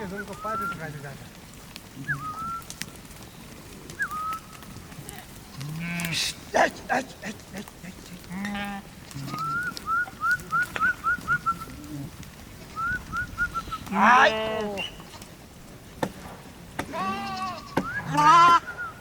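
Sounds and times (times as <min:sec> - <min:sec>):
livestock bleating: 0:05.5 - 0:06.4, 0:08.0 - 0:09.7, 0:13.9 - 0:15.3, 0:16.9 - 0:18.6
bird chirping: 0:14.8 - 0:15.1.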